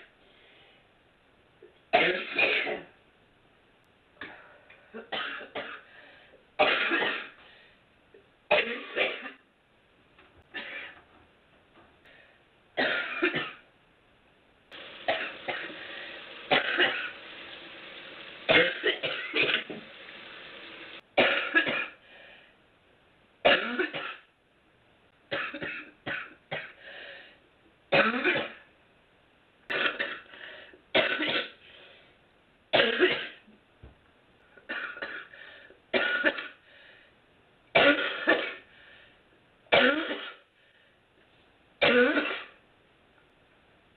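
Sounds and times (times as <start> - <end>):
woman coughing: 2.0 - 2.9, 5.0 - 5.9, 6.6 - 7.4, 8.5 - 9.4, 10.5 - 11.0, 12.8 - 13.6, 16.5 - 17.1, 18.5 - 19.8, 21.2 - 22.0, 23.5 - 24.3, 28.0 - 28.6, 31.0 - 31.6, 32.8 - 33.4, 36.0 - 36.6, 39.7 - 40.5, 41.8 - 42.6.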